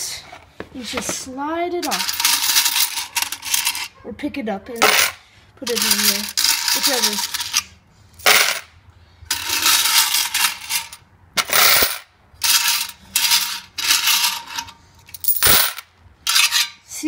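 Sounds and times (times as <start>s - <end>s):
coins pouring and rattling: 1.8s - 3.9s, 4.8s - 8.6s, 9.3s - 16.6s.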